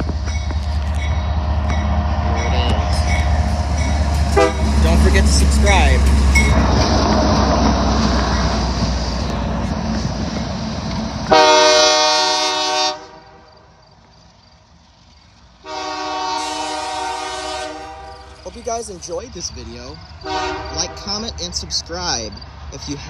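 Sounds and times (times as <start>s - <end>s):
freight train rumbling past: 0.0s - 23.0s
locomotive air horn blasts: 4.3s - 5.1s, 11.3s - 13.5s, 15.6s - 18.4s, 20.2s - 21.2s.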